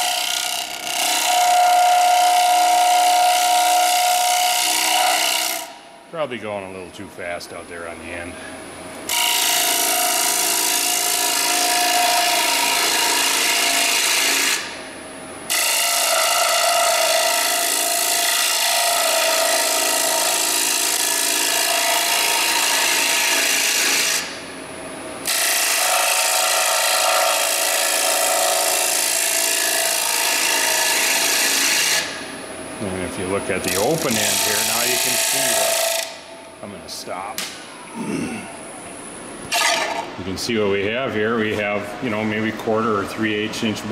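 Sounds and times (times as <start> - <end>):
tool scraping spinning wooden bowl: 0.0 - 5.8, 9.1 - 14.7, 15.5 - 24.3, 25.3 - 32.2, 32.8 - 36.2.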